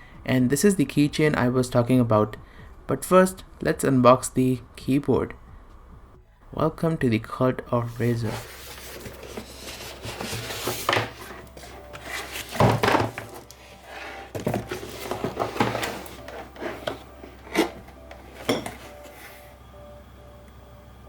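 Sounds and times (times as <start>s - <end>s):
faint background music: 0.0s - 21.0s
box and packaging being handled: 7.9s - 19.6s.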